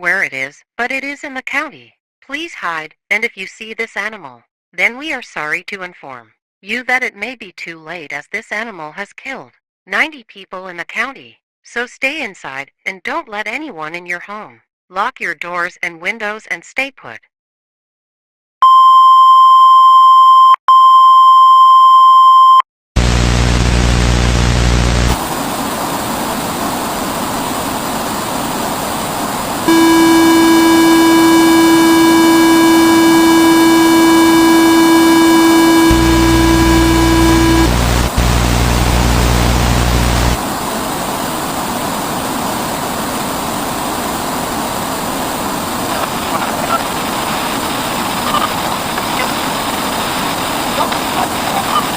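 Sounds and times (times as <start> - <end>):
low hum: 23.0 - 25.2, 29.7 - 43.6
harsh buzzing static: 23.0 - 25.3, 29.6 - 45.0
long electronic beeps: 29.7 - 40.4.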